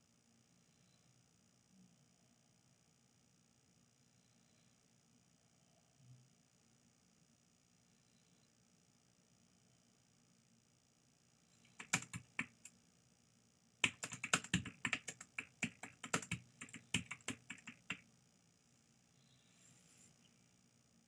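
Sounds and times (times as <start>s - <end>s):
typing on computer keyboard: 11.7s - 12.7s, 13.8s - 18.0s.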